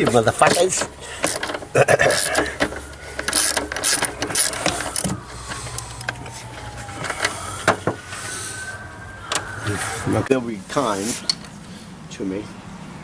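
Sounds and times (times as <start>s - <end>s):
hand tools on metal parts: 0.0s - 9.9s, 10.9s - 11.6s.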